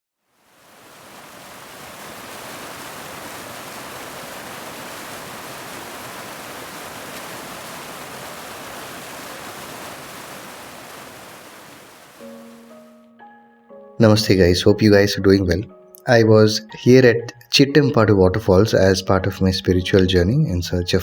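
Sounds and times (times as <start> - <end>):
waterfall rushing: 0.4 - 12.8.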